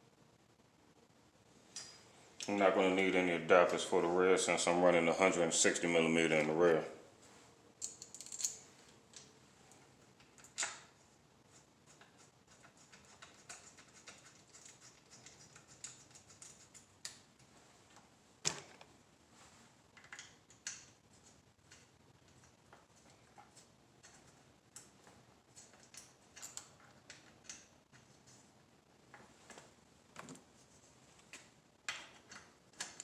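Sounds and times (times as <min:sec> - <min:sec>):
metal parts and tools clicking: 0:07.8 - 0:09.3, 0:21.7 - 0:28.4.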